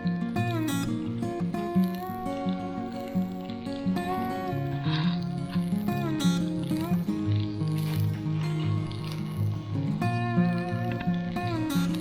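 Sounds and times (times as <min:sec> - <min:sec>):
plucked string melody: 0:00.0 - 0:12.0.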